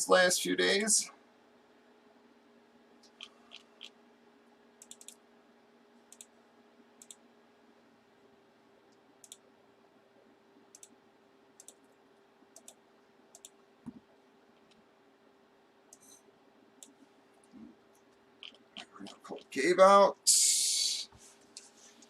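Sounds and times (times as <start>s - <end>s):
faint steady hum: 0.0s - 22.0s
computer mouse clicks: 3.0s - 3.9s, 4.8s - 5.2s, 6.1s - 6.3s, 7.0s - 7.2s, 8.9s - 9.4s, 10.7s - 11.0s, 11.6s - 11.9s, 12.5s - 14.0s, 15.9s - 16.2s.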